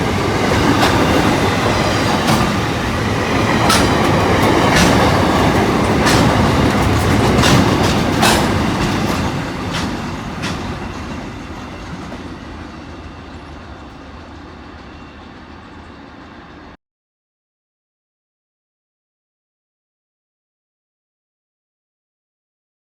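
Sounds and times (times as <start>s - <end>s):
train wheels clacking over rail joints: 0.0s - 16.2s.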